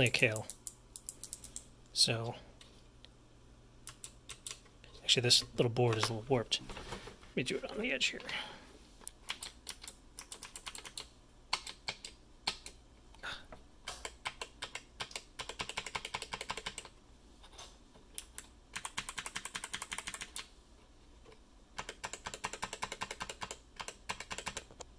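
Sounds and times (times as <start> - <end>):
mechanical keyboard clicking: 9.3 - 12.8, 14.0 - 16.9, 18.2 - 20.5, 21.8 - 24.7.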